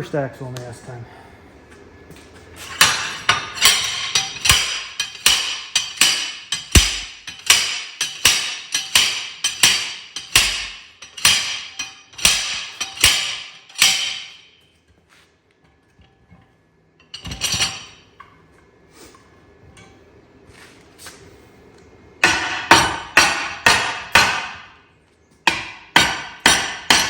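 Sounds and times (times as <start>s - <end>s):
slide hammer banging steel on steel: 2.8s - 14.6s, 22.2s - 24.8s, 25.5s - 27.0s.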